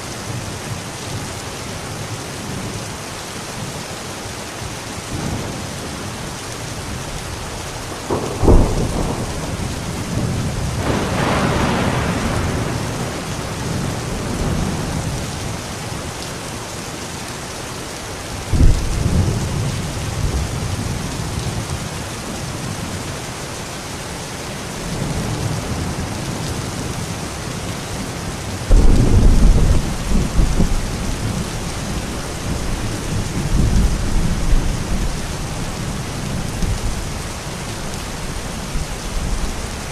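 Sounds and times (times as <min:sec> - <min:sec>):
steady rain: 0:00.0 - 0:39.9
thunder claps and rumble: 0:05.1 - 0:16.2, 0:18.4 - 0:23.0, 0:24.8 - 0:39.9.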